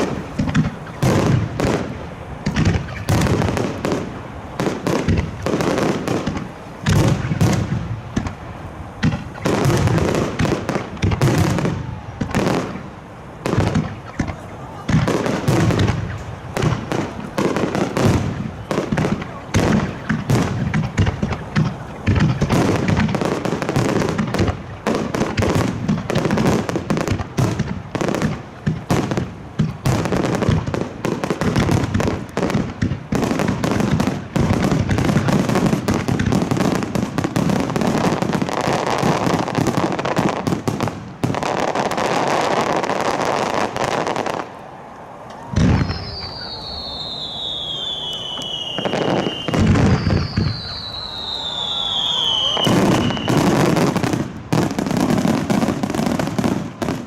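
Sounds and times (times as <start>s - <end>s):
fireworks crackle: 0.0s - 57.0s
fireworks shells bursting: 45.6s - 57.0s.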